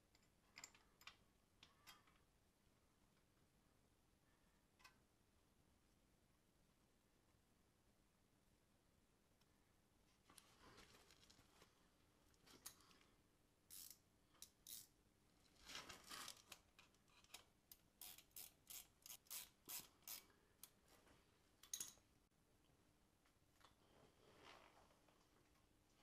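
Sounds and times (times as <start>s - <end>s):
ratchet wrench rasping: 13.7s - 14.9s, 18.0s - 20.2s.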